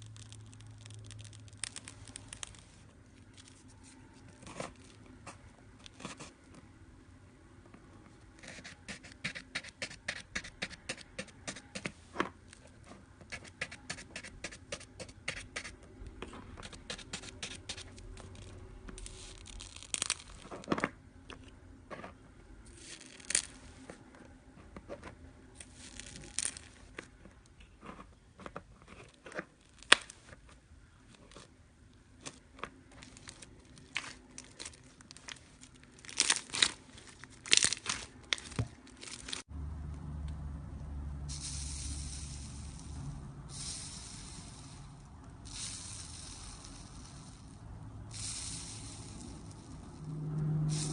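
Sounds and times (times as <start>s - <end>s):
dried slime crust crackling: 0.0s - 5.2s, 16.6s - 20.7s, 25.6s - 31.5s, 32.2s - 39.5s.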